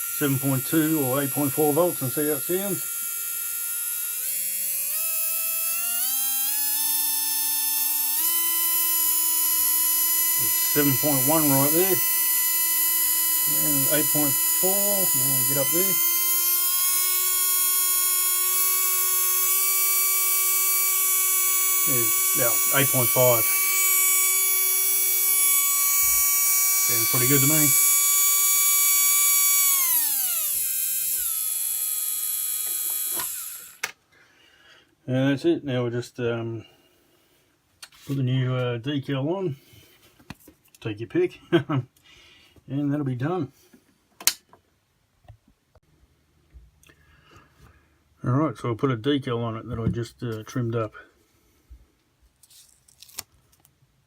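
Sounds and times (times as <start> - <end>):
electric motor whining: 0.0 - 33.9
motor stopping click: 12.0 - 33.9.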